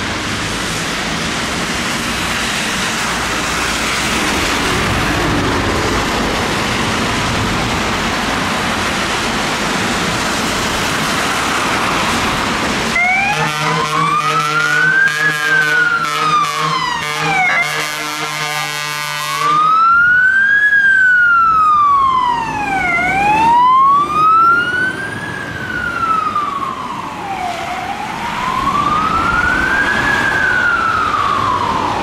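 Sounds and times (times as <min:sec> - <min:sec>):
fire engine siren wailing: 0:00.0 - 0:08.2, 0:08.9 - 0:32.0
steady rushing noise: 0:00.0 - 0:13.3.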